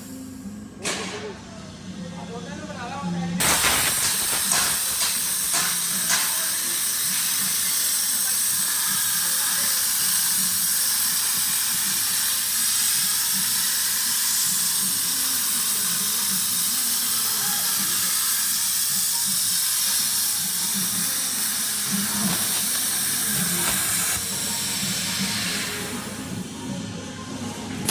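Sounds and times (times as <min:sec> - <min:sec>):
rough crackle: 0:03.4 - 0:05.6
plasma cutter arc hissing: 0:03.4 - 0:26.5.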